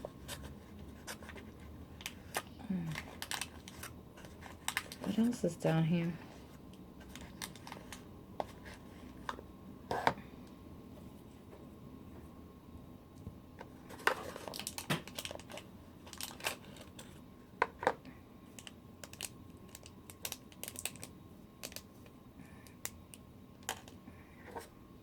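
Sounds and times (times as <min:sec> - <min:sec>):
toy pieces and packaging handled: 0:00.3 - 0:05.6, 0:07.0 - 0:08.8, 0:13.9 - 0:17.2, 0:18.5 - 0:21.9.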